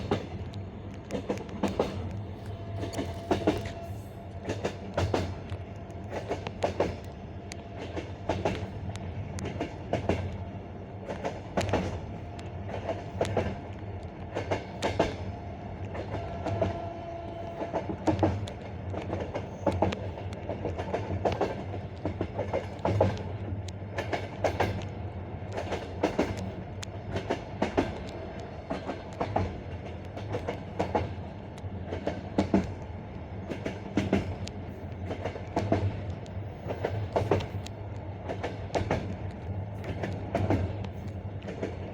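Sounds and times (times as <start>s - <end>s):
low rumble of moving carriage: 0.0s - 41.9s
train wheels clattering over rail joints: 1.1s - 7.1s, 17.6s - 24.8s, 33.4s - 41.9s.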